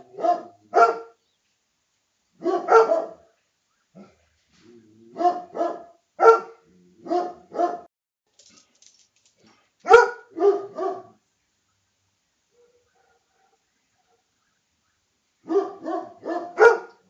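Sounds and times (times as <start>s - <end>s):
dog barking: 0.0s - 1.2s, 2.4s - 3.3s, 5.1s - 7.9s, 9.8s - 11.2s, 12.5s - 14.3s, 15.4s - 17.0s.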